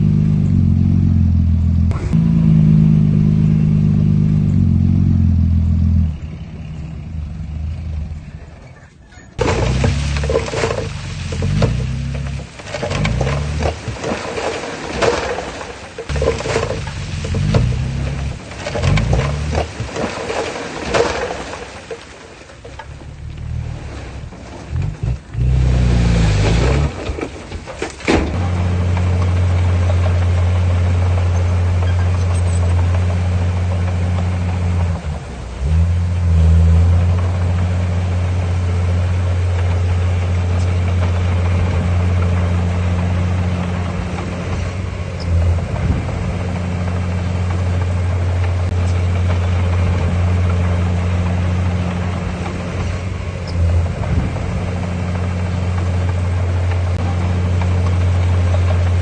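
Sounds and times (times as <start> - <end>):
heavy diesel engine droning: 0.0 - 20.8, 21.4 - 59.0.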